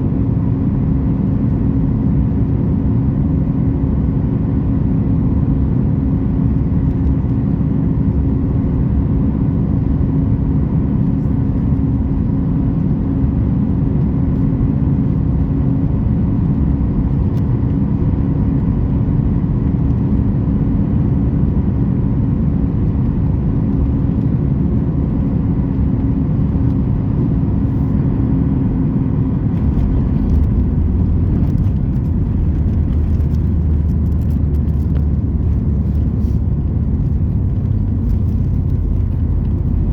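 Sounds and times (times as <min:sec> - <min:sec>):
airliner cabin engine rumble: 0:00.0 - 0:39.9
steady hum: 0:11.0 - 0:39.9.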